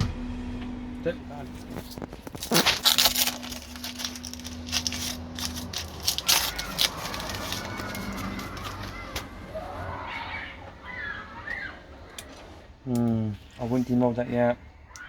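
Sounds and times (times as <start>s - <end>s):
low hum: 0.0s - 13.5s
handling knocks and crackles: 1.3s - 9.5s.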